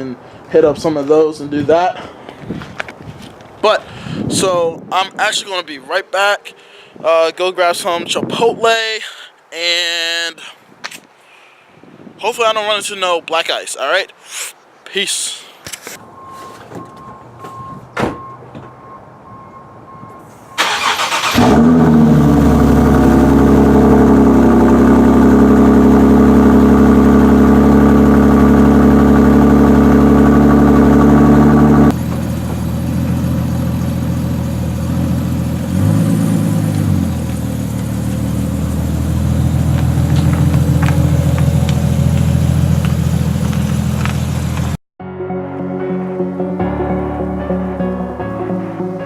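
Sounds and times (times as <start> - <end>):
faint beep tone: 16.1 - 20.6
car engine starting and idling: 20.3 - 44.8.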